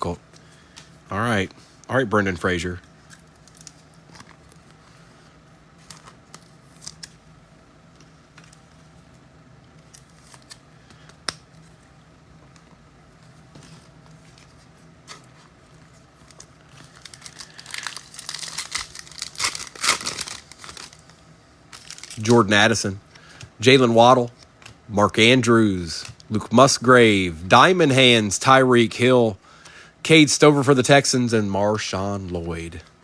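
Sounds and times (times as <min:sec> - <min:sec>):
wrapper crinkling and tearing: 0:03.1 - 0:04.8, 0:16.2 - 0:22.4
cards clicking and rustling: 0:09.8 - 0:11.8, 0:24.2 - 0:24.8.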